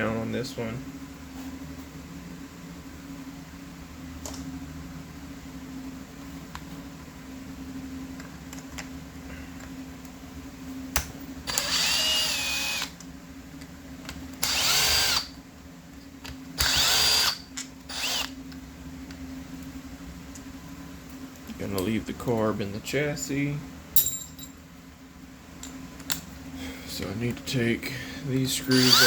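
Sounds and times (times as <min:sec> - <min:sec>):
electric drill motor whine: 0:11.5 - 0:13.0, 0:14.4 - 0:15.4, 0:16.6 - 0:18.4, 0:28.7 - 0:29.0.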